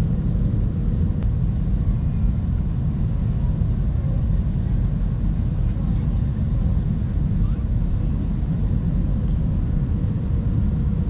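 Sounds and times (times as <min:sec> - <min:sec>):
airplane cabin engine rumble: 0:00.0 - 0:01.8.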